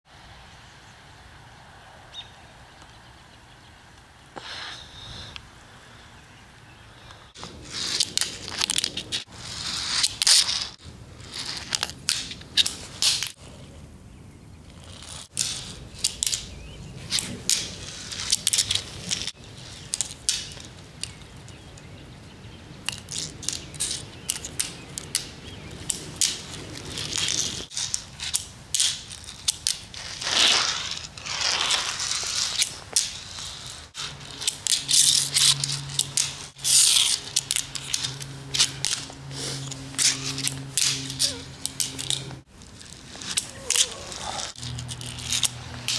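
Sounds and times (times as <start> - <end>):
drawn-out scrapes: 7.0 - 13.8, 14.7 - 20.7, 25.9 - 45.9.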